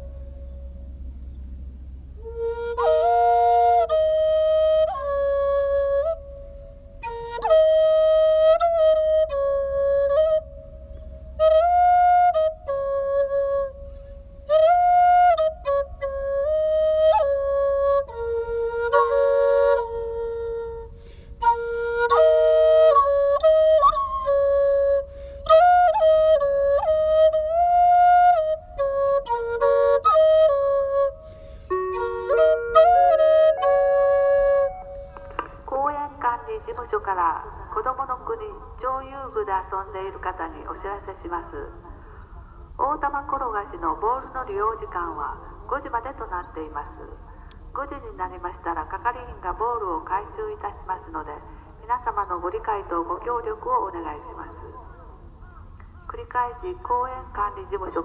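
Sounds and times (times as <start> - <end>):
flute slow melody: 0.0 - 37.2.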